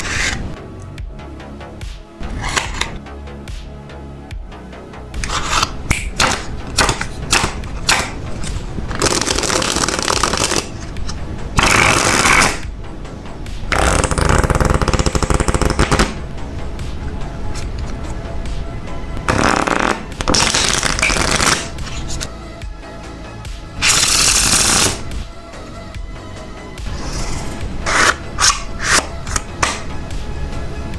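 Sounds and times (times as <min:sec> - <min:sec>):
playing cards tapping and sliding: 0:00.0 - 0:00.6, 0:02.2 - 0:03.0, 0:05.2 - 0:12.6, 0:19.5 - 0:22.3, 0:26.9 - 0:29.9
background music: 0:00.0 - 0:30.9
cards riffling: 0:02.3 - 0:03.0, 0:05.2 - 0:10.8, 0:19.5 - 0:22.3.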